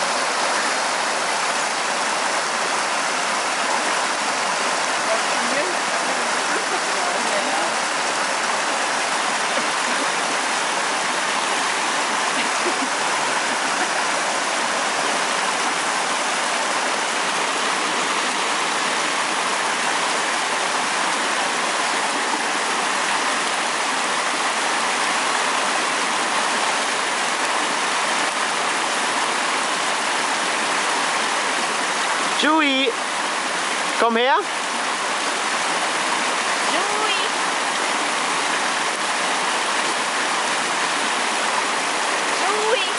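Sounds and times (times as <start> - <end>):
waves washing in: 0.0 - 42.9.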